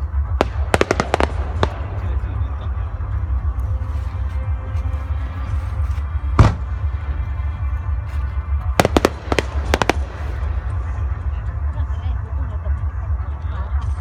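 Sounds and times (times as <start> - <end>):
low rumble: 0.0 - 14.0
firework cracks: 0.4 - 2.3, 8.8 - 10.9
firework bang: 8.8 - 10.5.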